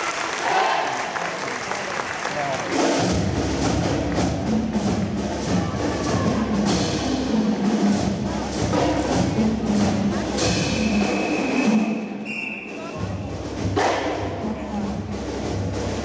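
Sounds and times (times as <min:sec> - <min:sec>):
drum and percussion strikes: 0:02.6 - 0:12.2, 0:12.8 - 0:16.0.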